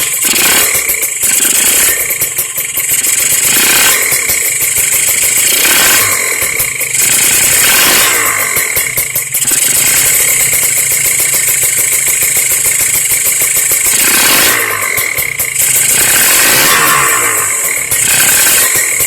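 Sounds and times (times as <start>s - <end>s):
motorcycle engine revving: 0.0s - 19.0s.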